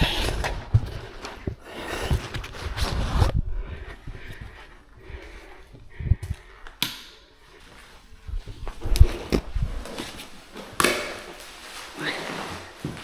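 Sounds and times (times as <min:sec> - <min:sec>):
knocks and thumps of movement: 0:08.1 - 0:11.4.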